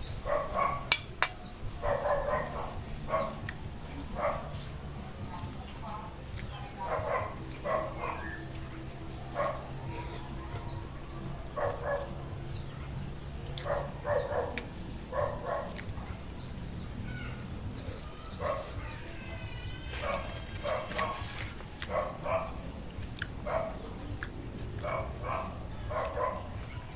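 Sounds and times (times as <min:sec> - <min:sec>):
birds chirping: 0:00.0 - 0:26.9
dog barking: 0:00.1 - 0:01.0, 0:01.8 - 0:03.5, 0:04.1 - 0:04.8, 0:06.8 - 0:10.0, 0:11.5 - 0:16.4, 0:18.2 - 0:19.0, 0:20.0 - 0:22.7, 0:23.4 - 0:23.9, 0:24.8 - 0:26.9.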